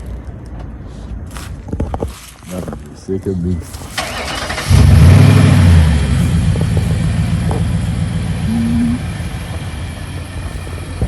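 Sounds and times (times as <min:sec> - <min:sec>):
car engine idling: 0:04.0 - 0:11.0
short steady tone: 0:08.4 - 0:09.2.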